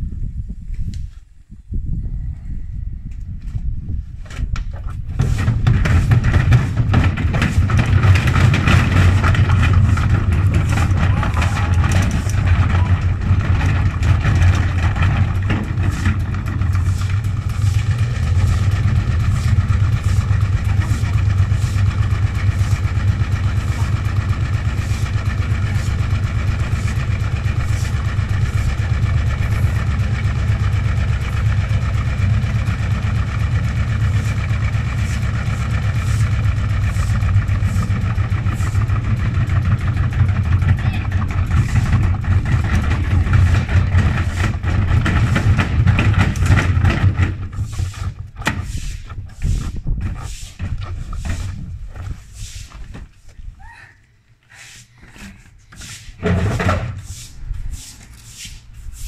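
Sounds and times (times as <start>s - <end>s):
washing machine motor hum: 5.2s - 47.7s.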